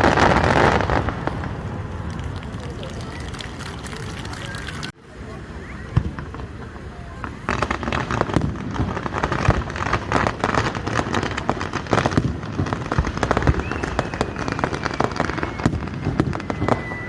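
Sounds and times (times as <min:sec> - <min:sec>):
fireworks bangs and crackles: 0:00.0 - 0:17.0
faint descending whistle: 0:13.4 - 0:17.0.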